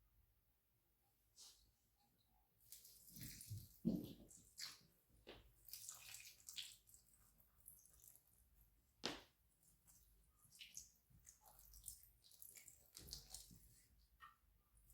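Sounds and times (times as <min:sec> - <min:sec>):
water splashing and trickling: 0:02.7 - 0:08.6, 0:09.6 - 0:14.0.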